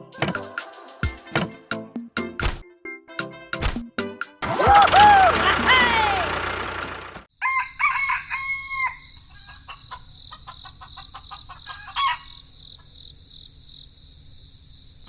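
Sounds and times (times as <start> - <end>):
rooster crowing: 4.6 - 6.3, 7.4 - 10.1, 11.6 - 12.4
crickets chirring: 7.4 - 15.0.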